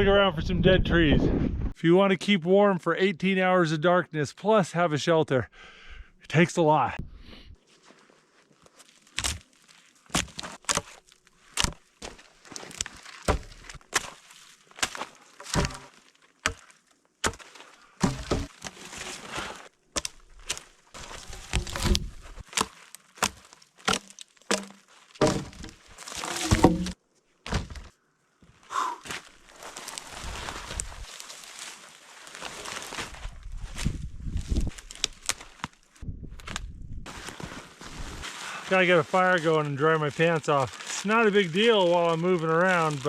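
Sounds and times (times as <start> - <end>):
wood chopping cracks and thuds: 9.1 - 9.5, 10.1 - 14.2, 14.8 - 18.9, 19.9 - 27.9, 34.7 - 35.8.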